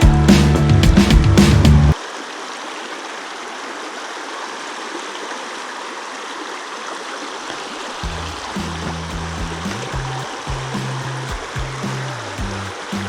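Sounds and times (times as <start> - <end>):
background music: 0.0 - 2.0
stream water rushing: 1.9 - 13.0.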